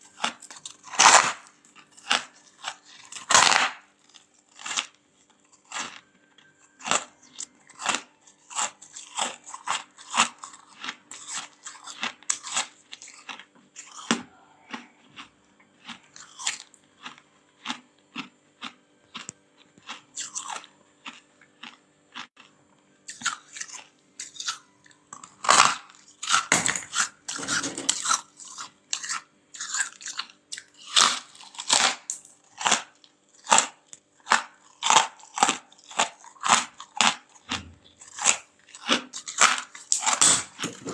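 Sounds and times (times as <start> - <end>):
frost being chewed crunching: 0.0 - 40.9.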